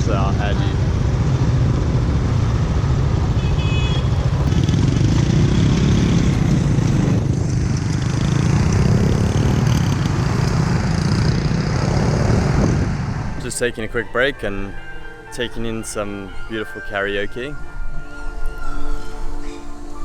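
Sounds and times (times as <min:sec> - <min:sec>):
motorbike engine rumble: 0:00.0 - 0:13.9
wind on microphone: 0:06.0 - 0:13.4.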